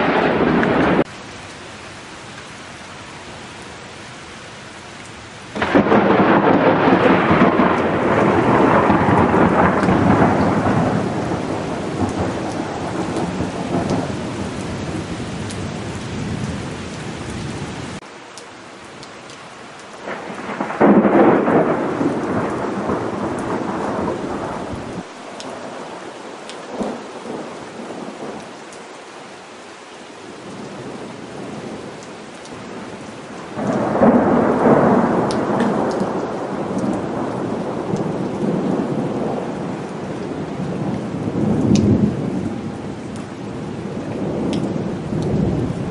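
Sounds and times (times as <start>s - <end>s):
thunder peals: 0.0s - 1.1s, 5.6s - 15.0s, 20.1s - 25.6s, 33.6s - 39.7s
steady rain: 0.0s - 45.9s.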